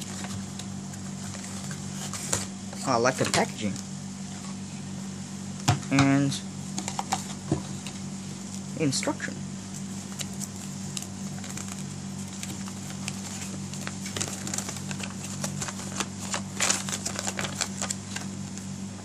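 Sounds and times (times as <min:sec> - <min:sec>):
paper crinkling: 0:00.0 - 0:02.5, 0:09.7 - 0:18.7.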